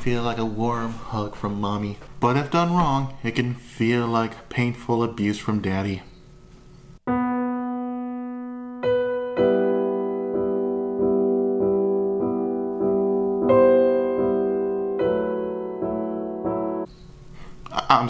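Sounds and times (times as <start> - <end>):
piano chords: 7.0 - 16.9.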